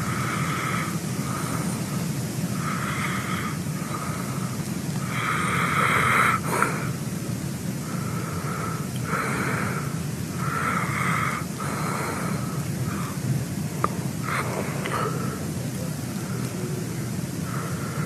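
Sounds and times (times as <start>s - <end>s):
steady low hum: 0.0s - 18.0s
man snoring: 5.0s - 6.9s.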